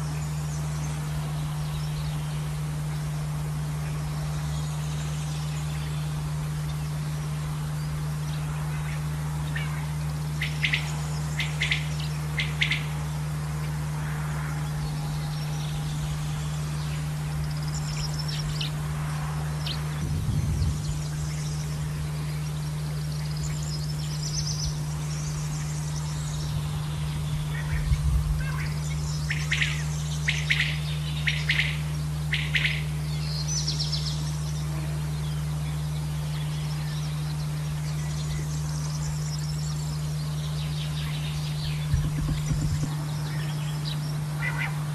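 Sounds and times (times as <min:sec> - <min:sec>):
steady low hum: 0:00.0 - 0:44.9
quail calling: 0:27.5 - 0:32.9, 0:44.3 - 0:44.9.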